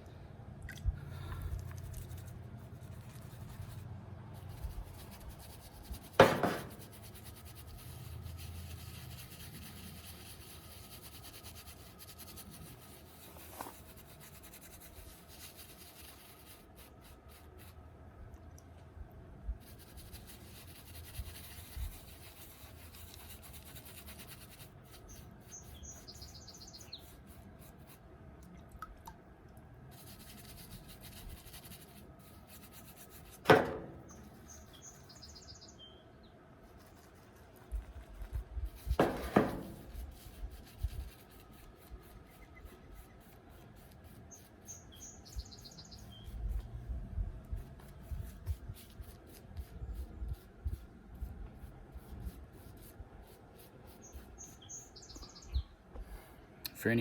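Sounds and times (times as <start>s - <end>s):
sharp knocks: 6.2s - 6.8s, 33.4s - 34.2s, 38.9s - 39.8s
bird chirping: 25.0s - 27.2s, 34.0s - 36.3s, 44.3s - 46.4s, 53.9s - 55.8s.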